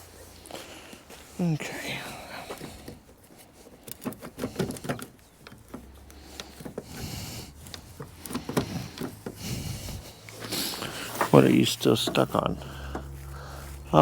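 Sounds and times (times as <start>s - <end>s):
plastic and metal clicking and scraping: 2.2s - 14.0s.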